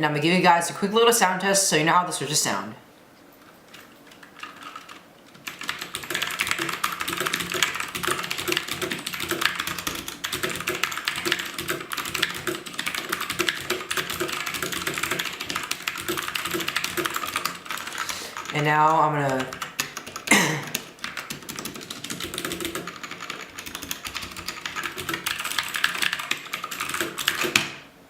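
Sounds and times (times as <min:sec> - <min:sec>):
mechanical keyboard typing: 0:03.7 - 0:27.8.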